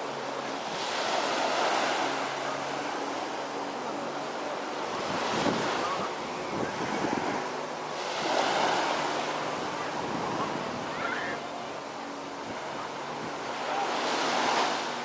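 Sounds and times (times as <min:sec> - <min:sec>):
ocean waves breaking: 0:00.0 - 0:15.0
wind buffeting microphone: 0:04.9 - 0:08.3.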